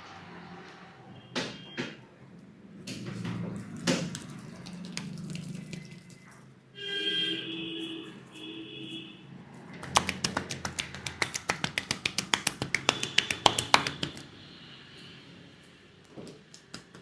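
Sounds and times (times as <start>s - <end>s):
wet rubbing of head massage: 3.7s - 6.3s, 9.8s - 14.2s
sharp slaps on head: 9.8s - 14.2s.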